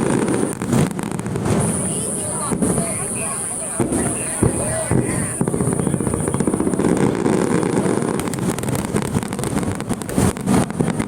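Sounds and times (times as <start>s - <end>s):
fireworks crackling: 0.0s - 11.0s.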